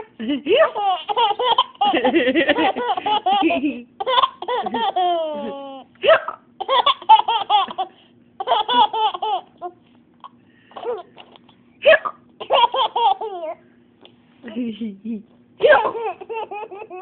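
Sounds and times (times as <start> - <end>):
baby laughing: 0.0 - 5.9, 6.6 - 11.6, 12.4 - 13.6, 15.6 - 17.0.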